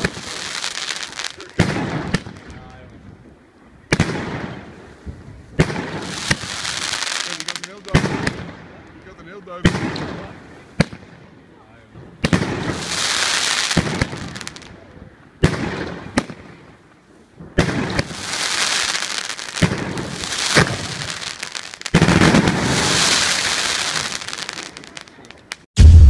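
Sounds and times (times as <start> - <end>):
fireworks bangs: 0.0 - 26.0
hiss after firework shots: 17.4 - 25.7.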